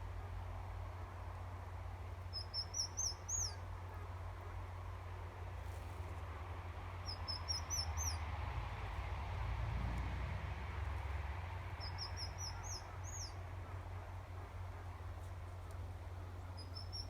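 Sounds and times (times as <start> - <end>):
small bird chirping: 2.3 - 3.6, 7.0 - 8.2, 11.8 - 13.4, 16.6 - 17.0.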